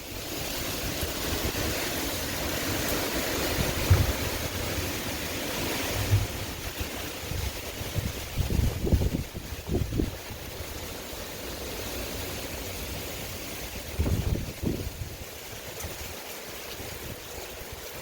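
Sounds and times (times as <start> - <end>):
storm wind blowing hard: 0.2 - 10.8, 13.7 - 16.2
wind buffeting microphone: 0.4 - 10.8, 13.8 - 16.2.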